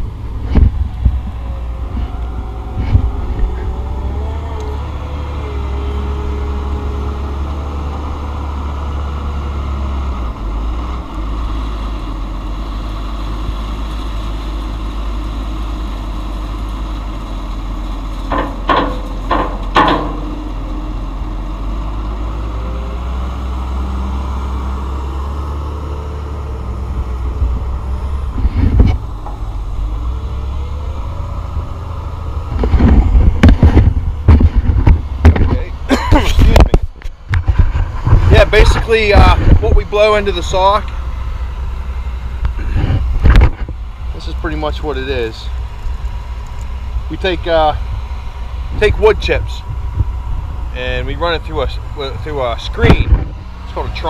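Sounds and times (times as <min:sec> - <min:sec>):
truck engine rumble: 0:00.0 - 0:54.0
knocks or rattles: 0:18.3 - 0:20.4.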